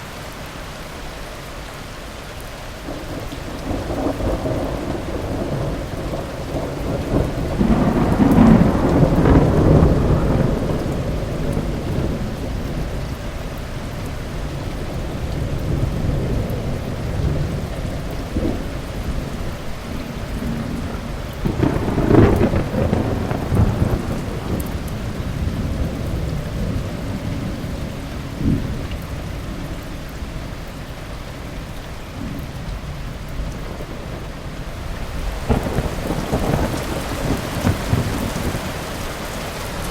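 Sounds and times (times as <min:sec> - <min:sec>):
heavy rain: 0:00.0 - 0:39.9
thunder rolling: 0:02.9 - 0:12.9, 0:15.7 - 0:27.6, 0:35.1 - 0:39.9.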